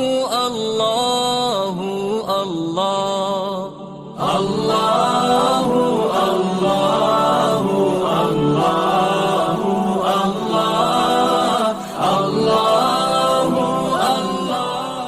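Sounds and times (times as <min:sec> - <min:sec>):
layered voices chanting a cappella: 0:01.6 - 0:15.0.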